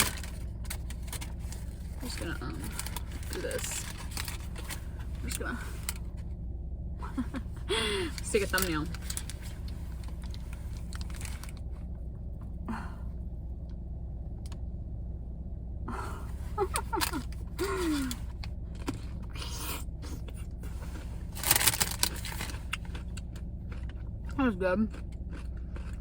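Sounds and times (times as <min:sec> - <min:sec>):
person crunching and chewing pickle: 0:00.0 - 0:06.1, 0:16.3 - 0:26.0
car engine humming: 0:00.0 - 0:26.0.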